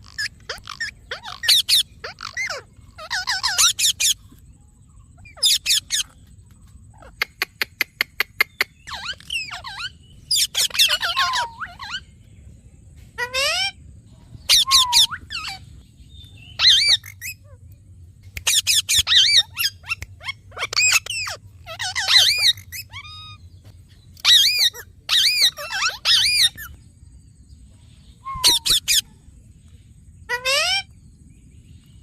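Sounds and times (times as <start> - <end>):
parrot chirping: 0.0 - 4.3, 5.1 - 6.2, 6.9 - 12.1, 13.2 - 17.6, 18.3 - 23.5, 24.1 - 26.8, 28.2 - 29.1.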